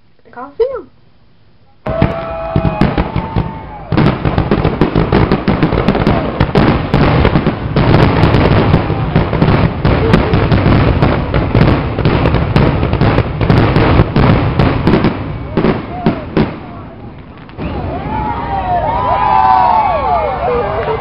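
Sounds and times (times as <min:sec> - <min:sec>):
firework whistle: 0:01.8 - 0:07.4, 0:17.5 - 0:21.0
fireworks bangs and crackling: 0:01.8 - 0:21.0.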